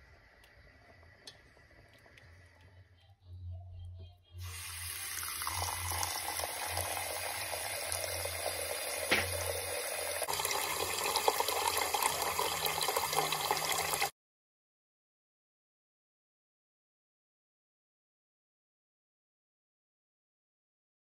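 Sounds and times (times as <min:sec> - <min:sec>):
water running from tap: 0:04.4 - 0:14.1.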